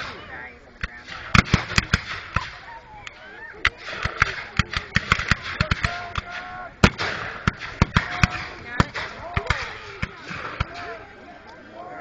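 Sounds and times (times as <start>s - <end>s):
musket shots cracking: 0.8s - 2.7s, 3.7s - 11.0s
distant shouting voices: 2.3s - 12.0s.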